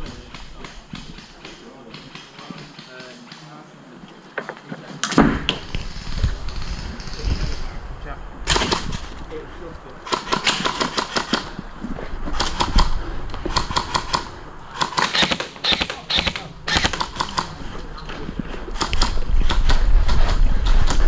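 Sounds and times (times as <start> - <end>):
low rumble: 5.4 - 10.1
airsoft rifle bursts: 13.5 - 17.5.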